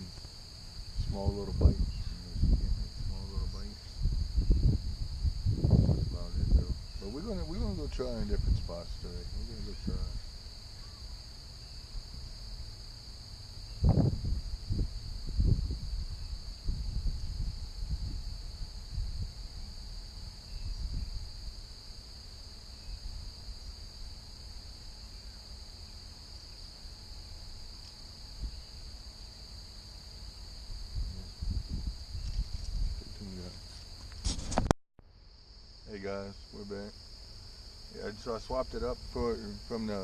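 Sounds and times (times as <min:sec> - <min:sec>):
dull low thumps and rumbles: 0:00.0 - 0:10.3, 0:13.7 - 0:21.5, 0:30.7 - 0:33.4
chorus of marsh insects: 0:00.0 - 0:40.0.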